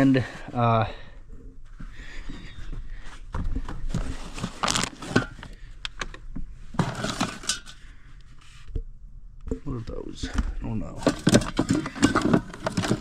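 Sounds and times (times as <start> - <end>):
plastic rustling: 3.8 - 5.4, 11.0 - 13.0.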